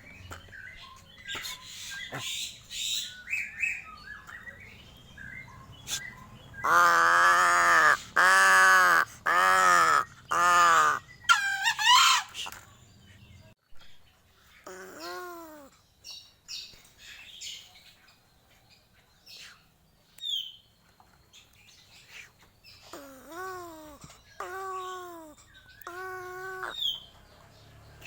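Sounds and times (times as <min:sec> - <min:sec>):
crow cawing: 0:06.6 - 0:11.0.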